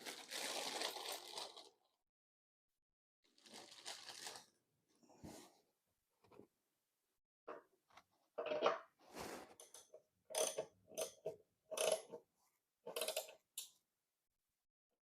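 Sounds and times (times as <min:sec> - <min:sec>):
scraping slide: 0:09.0 - 0:09.6.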